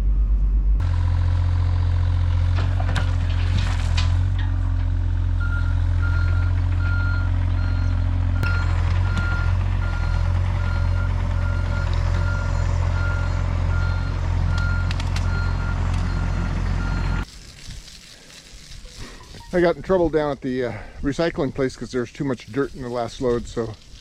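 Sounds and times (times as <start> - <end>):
diesel engine running: 0.0 - 17.3
reversing alarm beeping: 5.4 - 17.2.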